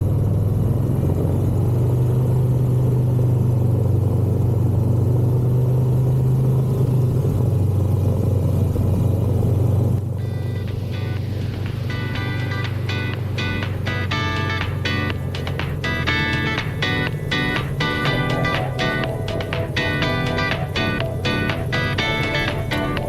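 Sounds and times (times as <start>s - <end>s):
motorcycle engine rumbling: 0.0s - 23.0s
music: 10.2s - 23.0s.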